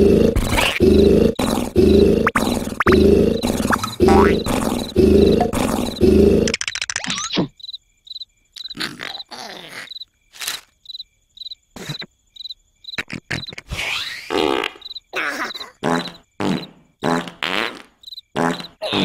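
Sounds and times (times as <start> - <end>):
person snoring loudly: 0.0 - 6.5.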